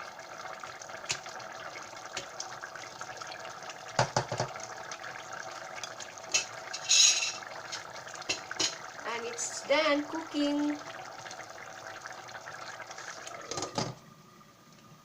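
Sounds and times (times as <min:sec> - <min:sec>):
sauce bubbling in a pot: 0:00.0 - 0:14.9
knocks: 0:04.0 - 0:04.6.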